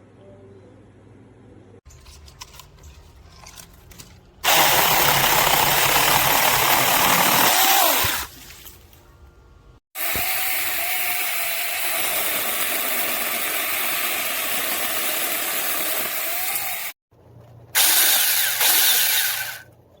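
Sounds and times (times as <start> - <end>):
electric chainsaw whining: 4.4 - 8.3, 10.0 - 17.0, 17.8 - 19.6.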